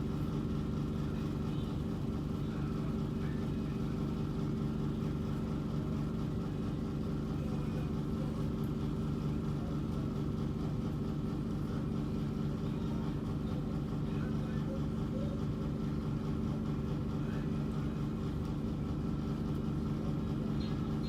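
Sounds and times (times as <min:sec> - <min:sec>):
low mechanical hum: 0:00.0 - 0:21.0.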